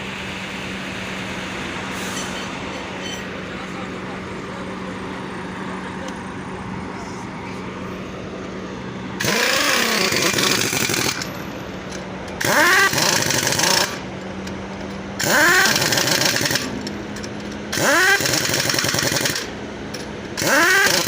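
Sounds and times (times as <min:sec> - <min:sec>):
pneumatic impact wrench: 0:09.2 - 0:21.0.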